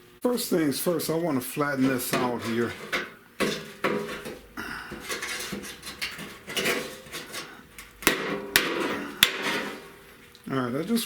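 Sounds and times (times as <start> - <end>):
metal panel rattling and scraping: 1.8 - 10.1
hammer knocks on sheet metal: 8.0 - 9.8.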